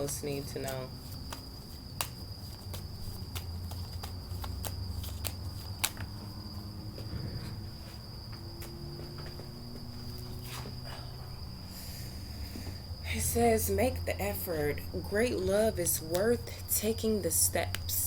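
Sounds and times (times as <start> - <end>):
cards being handled: 0.0 - 6.7
faint low hum: 0.0 - 18.0
high-pitched cricket-like trill: 0.0 - 18.0.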